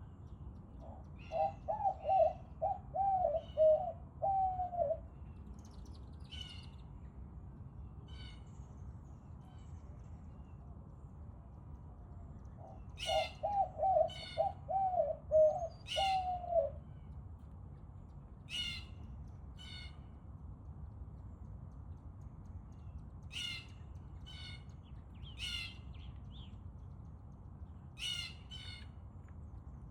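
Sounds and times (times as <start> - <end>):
dove cooing: 1.3 - 5.0, 13.0 - 16.8
bird harsh calls: 13.0 - 16.7, 18.5 - 19.0, 23.3 - 24.6, 25.3 - 25.9, 28.0 - 28.9.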